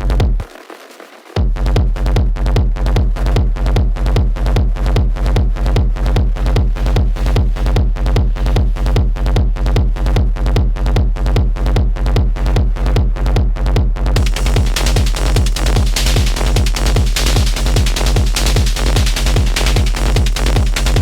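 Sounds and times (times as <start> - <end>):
techno loop with heavy bass: 0.0 - 21.0
bright hissing layer: 14.2 - 21.0.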